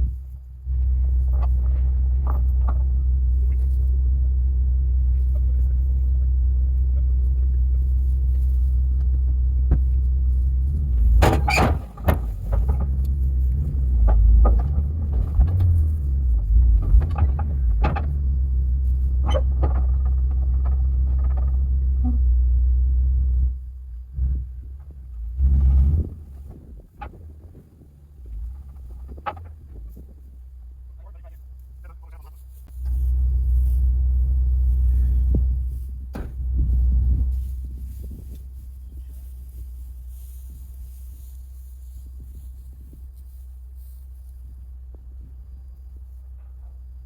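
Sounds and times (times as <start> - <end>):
truck engine rumbling: 0.0 - 47.0
sharp knocks and clunks: 10.7 - 18.4, 19.2 - 22.3, 35.2 - 37.0.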